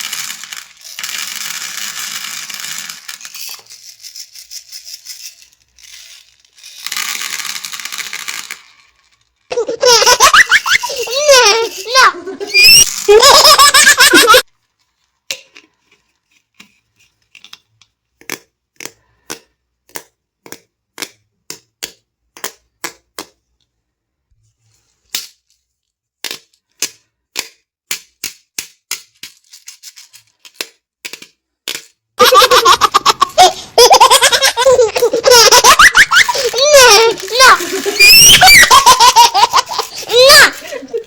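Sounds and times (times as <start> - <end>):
baby laughing: 9.5 - 14.4, 32.2 - 41.0.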